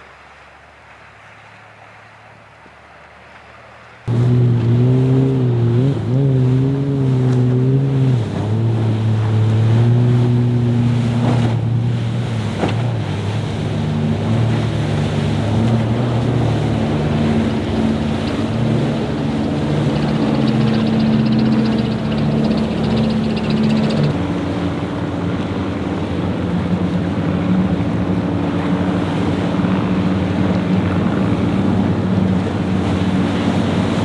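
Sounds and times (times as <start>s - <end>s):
waves and spray: 0.0s - 34.0s
wind on microphone: 4.1s - 24.3s
motorboat engine: 4.1s - 34.0s.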